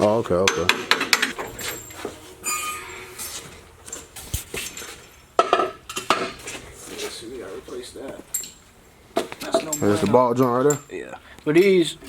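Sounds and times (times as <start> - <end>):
metal tools clinking and knocking: 0.4 - 4.1, 8.2 - 8.7, 9.4 - 11.0
metallic ring: 1.2 - 5.3.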